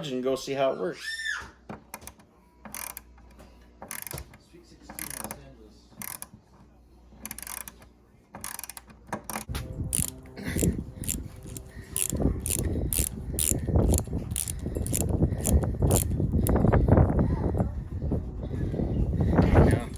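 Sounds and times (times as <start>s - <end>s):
ratchet clicking: 2.7s - 3.1s, 3.8s - 4.2s, 5.0s - 5.4s, 6.0s - 6.3s, 7.2s - 7.8s, 8.4s - 16.6s.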